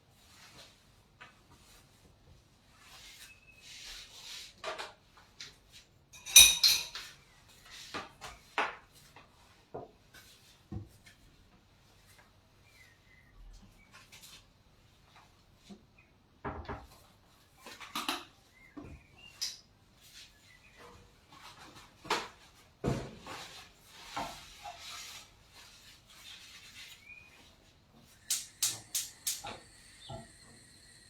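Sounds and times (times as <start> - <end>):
dishes and utensils clattering: 6.2 - 7.2.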